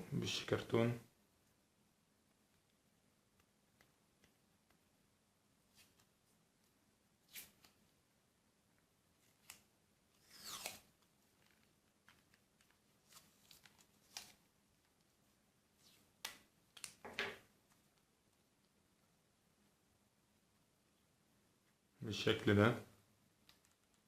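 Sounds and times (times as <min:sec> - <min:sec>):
adhesive tape tearing: 0:10.2 - 0:11.6.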